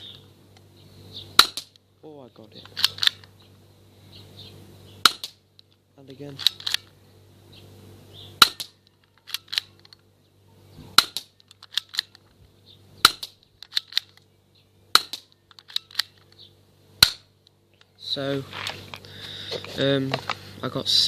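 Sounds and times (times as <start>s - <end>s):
bb gun shots: 1.4s - 1.8s, 5.0s - 5.4s, 8.4s - 9.7s, 11.0s - 12.1s, 13.0s - 14.0s, 14.9s - 15.3s.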